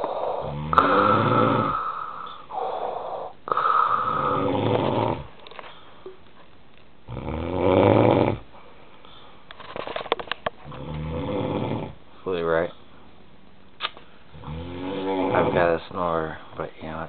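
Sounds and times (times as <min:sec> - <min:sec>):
man snoring raspy breaths: 0:00.0 - 0:05.4, 0:07.1 - 0:08.4, 0:10.7 - 0:12.0, 0:14.3 - 0:15.8.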